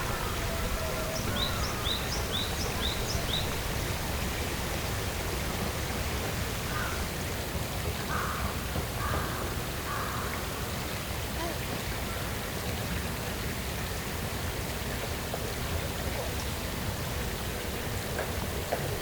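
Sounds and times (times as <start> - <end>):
harsh bird calls: 0.0 - 5.1
bird chirping: 1.0 - 3.7.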